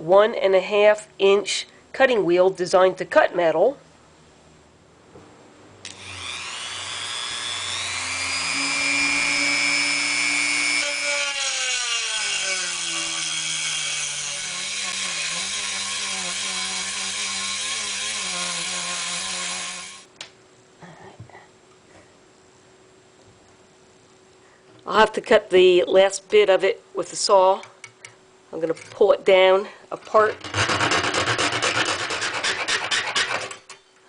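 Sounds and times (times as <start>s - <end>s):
rotary tool cutting metal: 5.9s - 20.1s, 30.4s - 33.8s.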